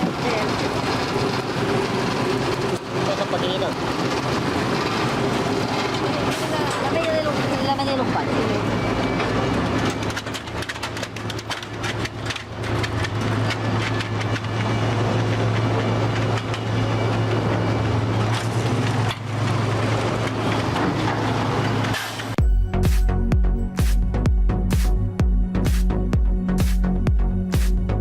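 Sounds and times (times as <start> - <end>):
heavy machinery humming: 0.0 - 28.0
clatter and knocks: 9.8 - 16.7.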